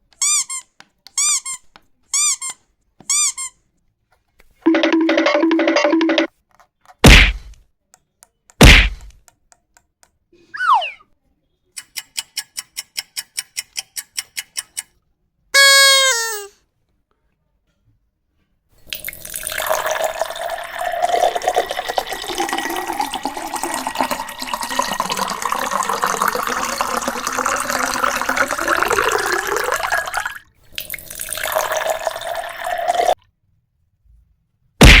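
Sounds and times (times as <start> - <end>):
water pouring: 18.9 - 33.2.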